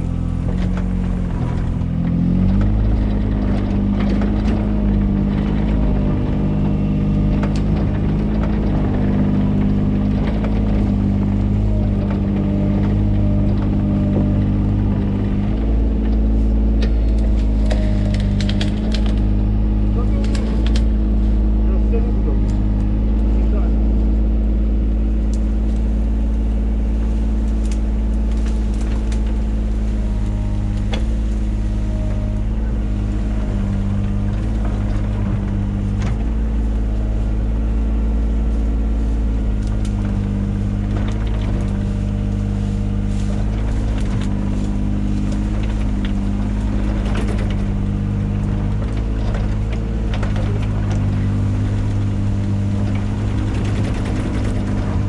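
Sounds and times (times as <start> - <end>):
excavator engine running: 0.0 - 55.0.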